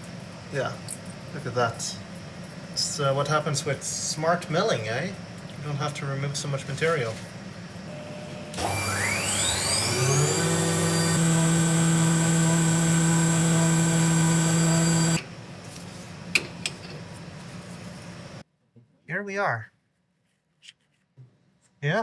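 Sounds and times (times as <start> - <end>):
milling machine spindle whine: 7.9 - 15.5.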